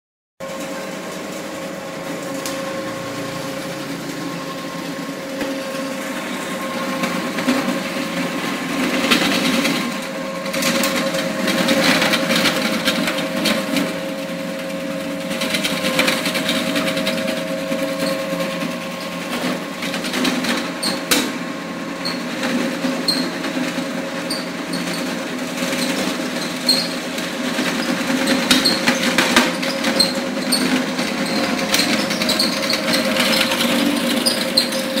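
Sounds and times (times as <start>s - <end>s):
motor whine: 0.6s - 7.8s
rough grinding noise: 1.1s - 21.0s, 25.7s - 35.0s.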